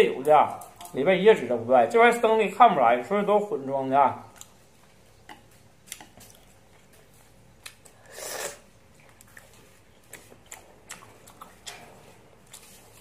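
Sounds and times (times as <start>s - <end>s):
person chewing wetly: 4.3s - 13.0s.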